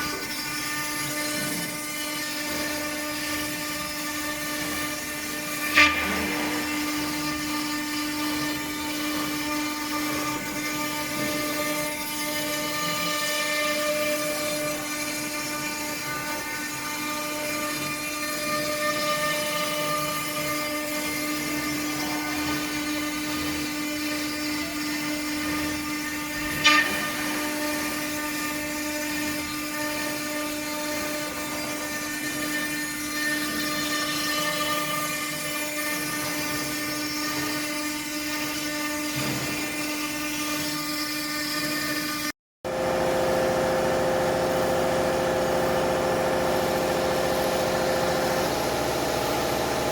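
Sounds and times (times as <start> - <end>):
steady machine hum: 42.7 - 49.9
router spindle whining: 42.8 - 49.9.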